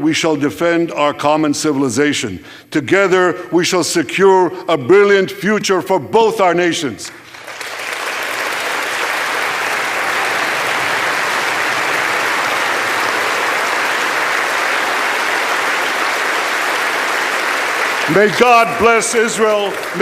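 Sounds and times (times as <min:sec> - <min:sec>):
audience applauding: 0:07.1 - 0:20.0.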